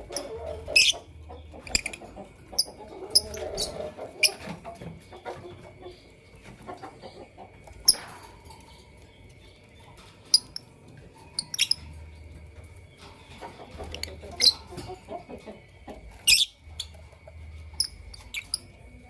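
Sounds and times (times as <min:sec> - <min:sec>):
lovebirds chirping: 0:00.0 - 0:19.0.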